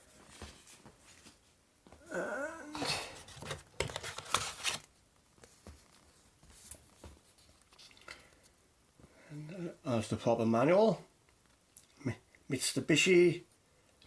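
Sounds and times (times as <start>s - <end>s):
paper rustling and crinkling: 0.0s - 1.6s, 3.0s - 8.0s.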